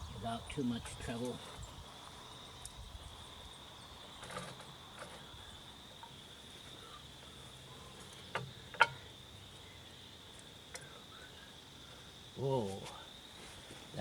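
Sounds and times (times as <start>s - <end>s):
crickets droning: 0.0s - 14.0s.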